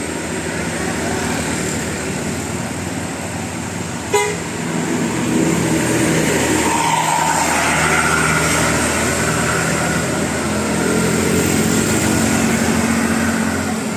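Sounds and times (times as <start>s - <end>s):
bus engine running: 0.0s - 6.7s, 7.4s - 13.9s
road noise: 0.0s - 13.9s.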